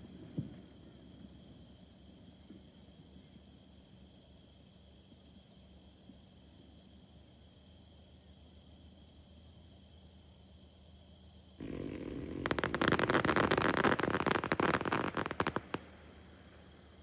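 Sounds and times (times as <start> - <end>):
crickets chirping: 0.0 - 17.0
crackling fireworks bursting: 11.6 - 17.0.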